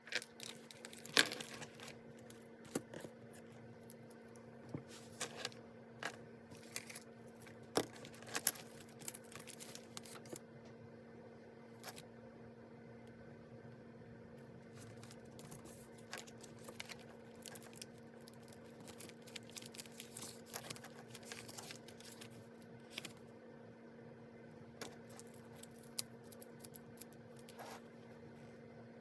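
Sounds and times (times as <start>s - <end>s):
faint steady hum: 0.0s - 29.0s
paper rustling: 18.4s - 23.2s.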